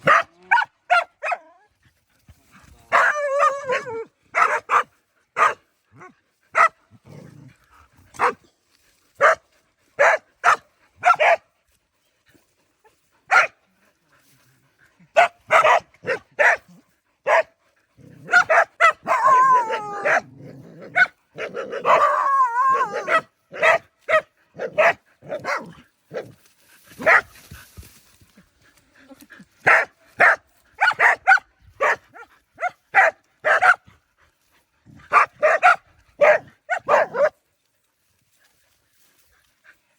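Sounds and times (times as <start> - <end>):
dogs barking: 0.0 - 1.4, 2.9 - 5.6, 6.5 - 6.8, 9.2 - 9.4, 10.0 - 11.4, 13.3 - 13.6, 15.2 - 17.5, 18.3 - 20.3, 20.9 - 26.3, 27.0 - 27.3, 29.6 - 33.9, 35.0 - 37.4.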